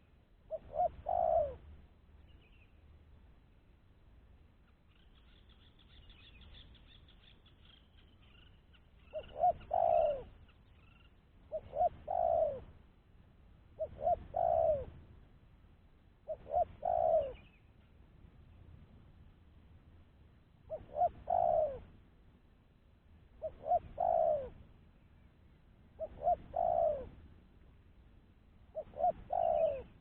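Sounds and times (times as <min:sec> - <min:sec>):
dove cooing: 0:00.0 - 0:01.7, 0:09.0 - 0:12.8, 0:13.8 - 0:15.0, 0:16.2 - 0:17.6, 0:20.7 - 0:22.0, 0:23.4 - 0:24.6, 0:26.0 - 0:27.2, 0:28.7 - 0:30.0
small birds chirping: 0:00.0 - 0:03.0, 0:04.6 - 0:12.6.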